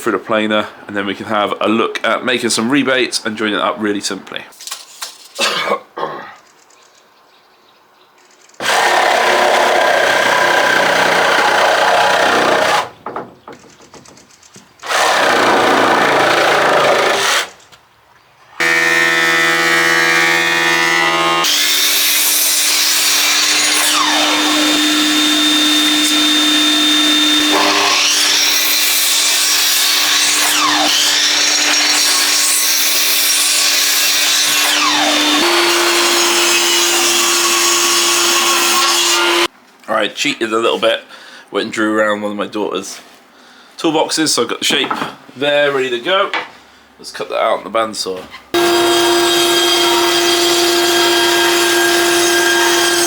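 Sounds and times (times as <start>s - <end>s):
electric wood planer cutting: 8.6s - 12.9s, 14.8s - 17.5s, 18.6s - 39.5s, 48.6s - 53.0s
planer motor humming: 18.6s - 21.8s, 23.1s - 28.6s, 48.6s - 53.0s.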